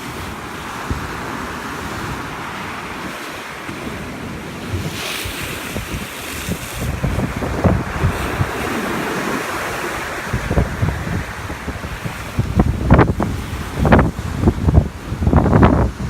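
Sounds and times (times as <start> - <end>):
waves breaking surf: 0.0 - 16.0
wind buffeting microphone: 0.0 - 16.0.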